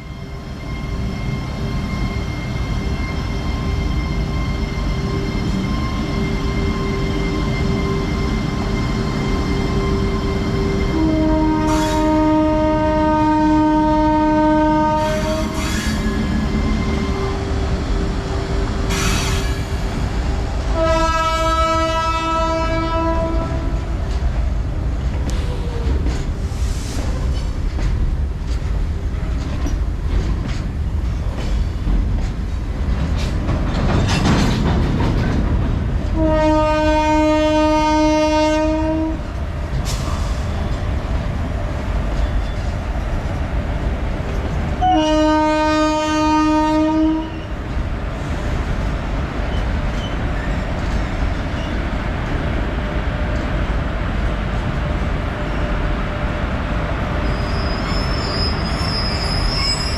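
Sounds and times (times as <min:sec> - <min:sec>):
freight train rolling rumble: 0:00.0 - 0:59.9
locomotive horn blasts: 0:10.9 - 0:15.6, 0:20.7 - 0:23.8, 0:36.2 - 0:39.2, 0:44.8 - 0:47.5.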